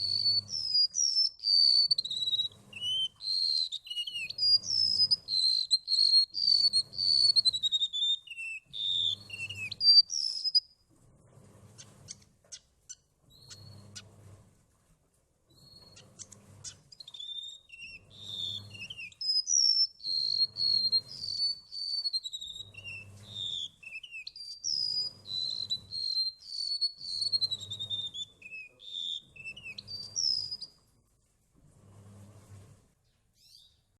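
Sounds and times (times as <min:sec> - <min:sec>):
bird singing whistled notes: 0:00.0 - 0:10.7, 0:16.9 - 0:30.8.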